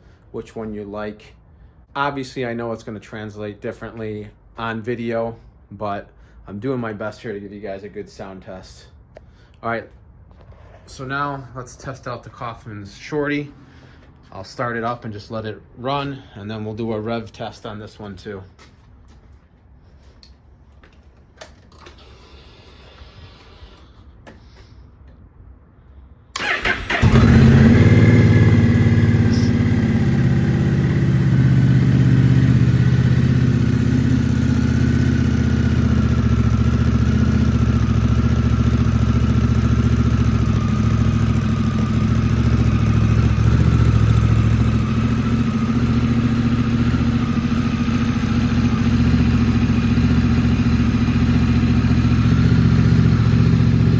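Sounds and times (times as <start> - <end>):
motorcycle engine starting and idling: 21.0 - 24.4, 26.4 - 53.9.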